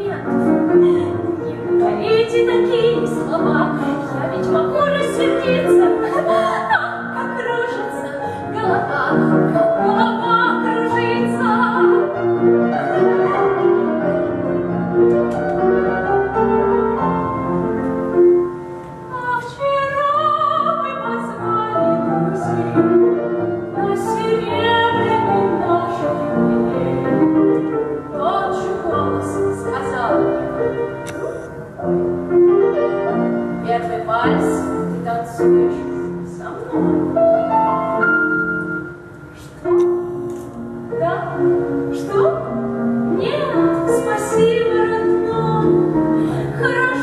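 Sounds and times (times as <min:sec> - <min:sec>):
woman singing opera: 0:00.0 - 0:12.2, 0:19.1 - 0:22.6, 0:23.8 - 0:30.5, 0:33.6 - 0:37.2, 0:40.9 - 0:47.0
piano accompaniment: 0:00.0 - 0:47.0.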